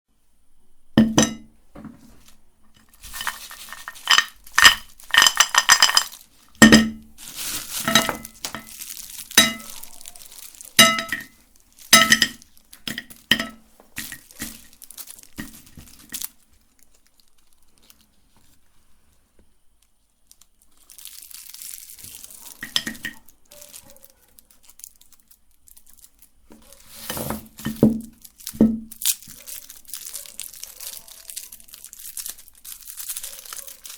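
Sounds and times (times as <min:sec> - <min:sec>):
soft rustling: 0:01.9 - 0:12.8, 0:13.6 - 0:19.5, 0:20.2 - 0:28.6
objects clinking against glass: 0:03.1 - 0:07.0, 0:07.8 - 0:08.8, 0:09.4 - 0:09.9, 0:10.8 - 0:11.3, 0:12.0 - 0:14.6, 0:22.6 - 0:23.2.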